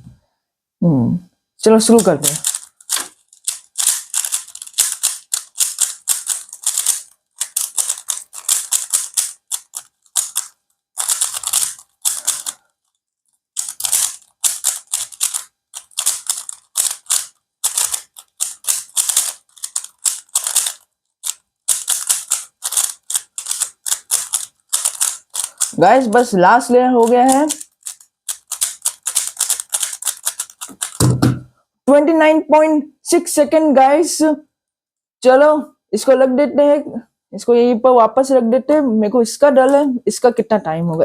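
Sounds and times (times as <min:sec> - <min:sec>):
puzzle cube clicking and clacking: 0:01.9 - 0:12.6, 0:13.6 - 0:31.5.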